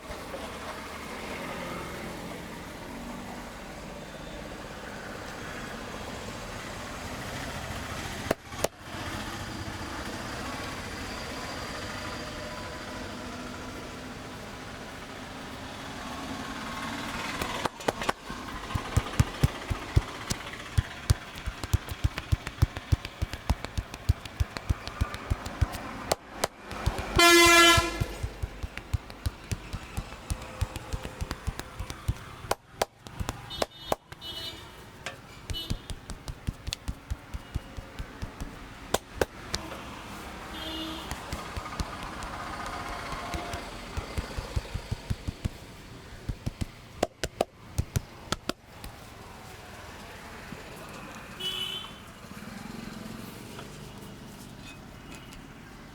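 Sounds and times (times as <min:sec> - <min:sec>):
street noise: 0:00.0 - 0:55.9
hands slapping on head: 0:17.3 - 0:34.3, 0:35.5 - 0:39.7, 0:41.0 - 0:45.6, 0:46.3 - 0:49.0
vehicle horn honking: 0:27.1 - 0:28.2, 0:33.5 - 0:34.8, 0:40.5 - 0:41.2, 0:51.4 - 0:52.0.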